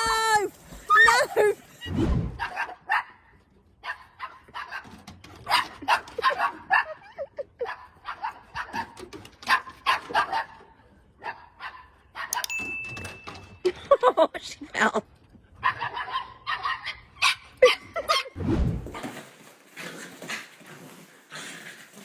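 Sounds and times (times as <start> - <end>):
dog barking: 2.4 - 3.2, 3.8 - 4.9, 9.5 - 10.6, 11.2 - 12.3, 15.6 - 18.2.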